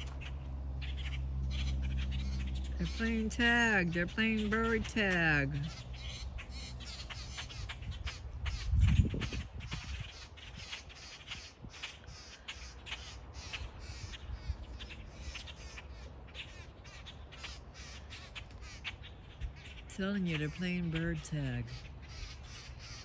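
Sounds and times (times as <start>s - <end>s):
flock of birds calling: 0.0s - 23.0s.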